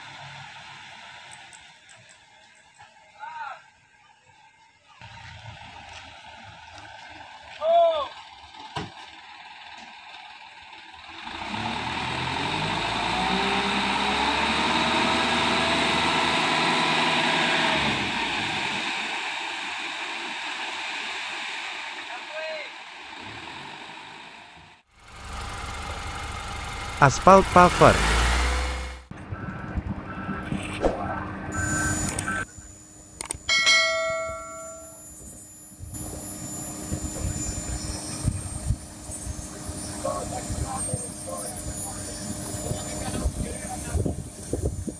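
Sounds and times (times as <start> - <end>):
heavy machinery diesel rumble: 5.0 - 33.0
truck engine passing by: 5.0 - 33.0.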